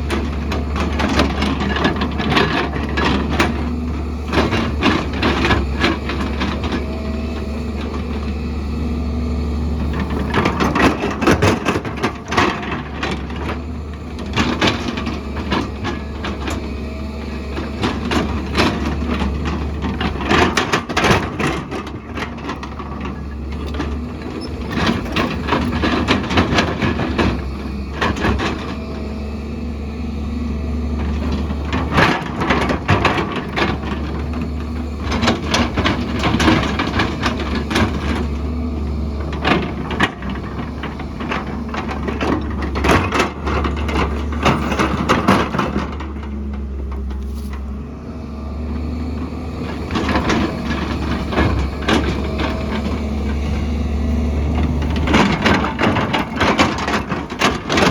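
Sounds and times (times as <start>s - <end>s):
diesel machine engine running: 0.0s - 57.9s
rock and soil knocking and scraping: 49.6s - 57.9s.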